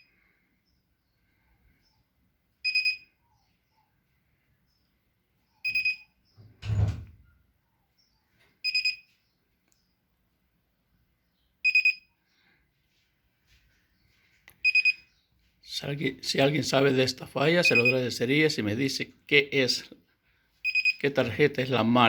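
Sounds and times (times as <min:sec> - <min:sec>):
washer control beeping: 0:05.6 - 0:06.1, 0:17.6 - 0:18.0.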